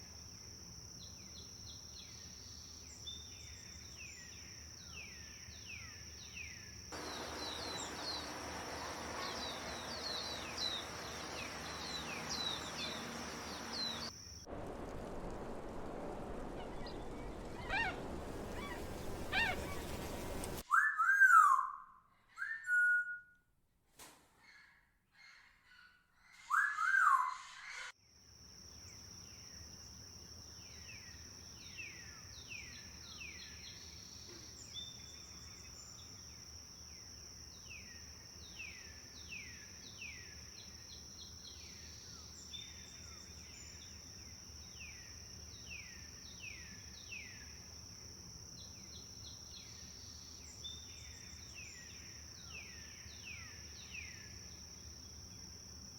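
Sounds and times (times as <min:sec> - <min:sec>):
quick bird chirps: 0:07.0 - 0:20.6
bird whistled notes: 0:16.6 - 0:21.6.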